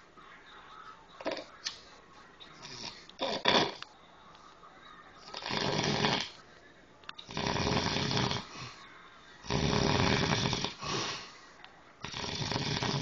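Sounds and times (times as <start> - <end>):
man snoring: 5.4 - 6.4, 7.3 - 8.6, 9.4 - 11.0, 12.0 - 13.0.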